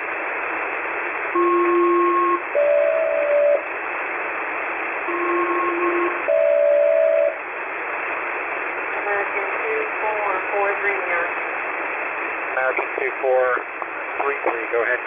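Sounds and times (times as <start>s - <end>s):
radio static: 7.8s - 15.0s.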